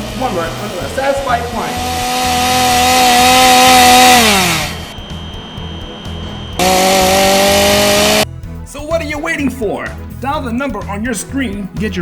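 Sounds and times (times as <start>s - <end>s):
chainsaw running: 0.0s - 8.2s.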